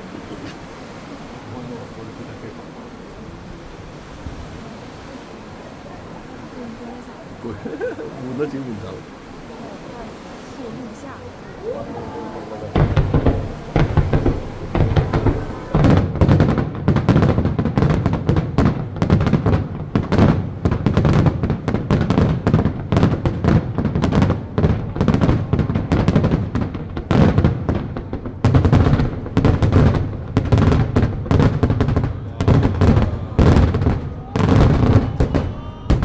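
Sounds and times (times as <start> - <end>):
fireworks booming and crackling: 11.0 - 36.0.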